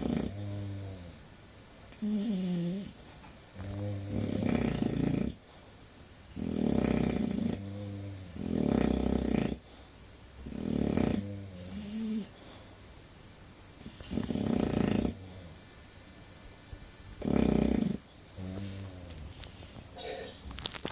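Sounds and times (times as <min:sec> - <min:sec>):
dog snoring: 0:00.0 - 0:01.2, 0:01.9 - 0:03.0, 0:03.6 - 0:05.4, 0:06.3 - 0:12.4, 0:13.8 - 0:15.6, 0:17.2 - 0:20.2.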